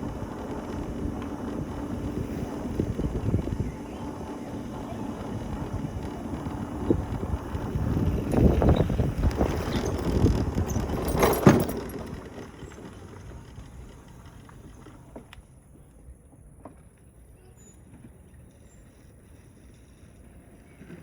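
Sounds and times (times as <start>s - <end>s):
mobility scooter rumbling: 0.0s - 21.0s
rattles and knocks: 7.5s - 13.0s.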